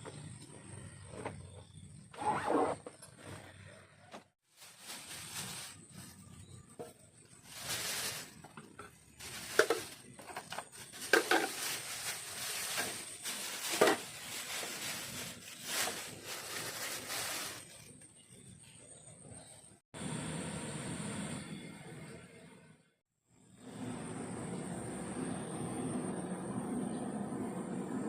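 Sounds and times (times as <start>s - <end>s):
rustling and handling noises: 4.4s - 18.4s
faint high whine: 17.8s - 28.0s.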